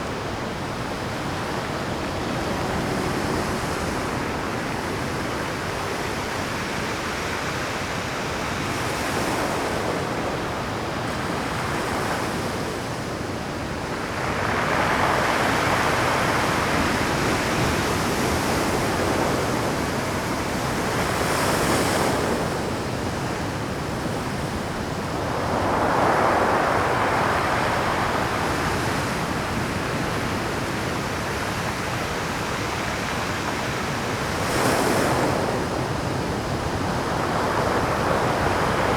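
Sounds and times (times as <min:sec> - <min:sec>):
surf breaking on rocky shore: 0:21.2 - 0:30.6.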